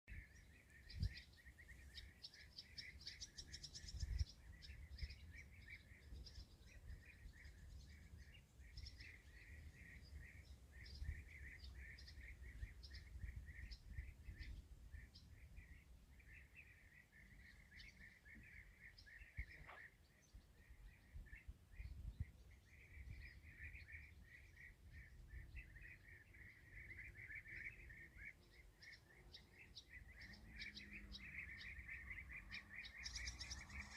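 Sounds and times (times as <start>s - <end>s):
songbirds chirping: 0.0s - 33.9s
wind on microphone: 3.7s - 5.3s, 21.0s - 23.4s.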